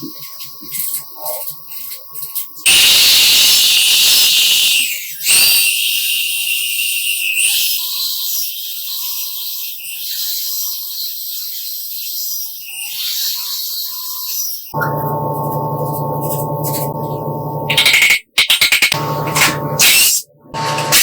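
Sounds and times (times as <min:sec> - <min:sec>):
loud hiss: 0:02.7 - 0:06.0.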